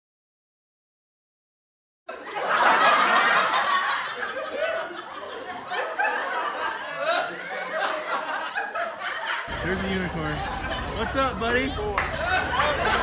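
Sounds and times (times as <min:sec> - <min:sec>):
people laughing: 0:02.1 - 0:13.0
people talking over one another: 0:09.5 - 0:13.0.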